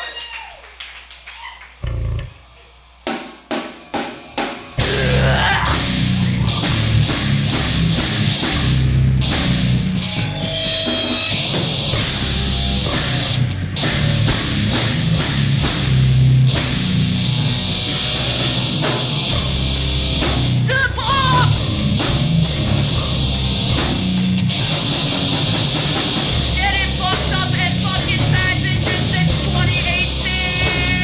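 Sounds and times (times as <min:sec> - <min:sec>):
punk band playing distorted rock: 0:03.0 - 0:31.0
drum kit pounding: 0:03.1 - 0:31.0.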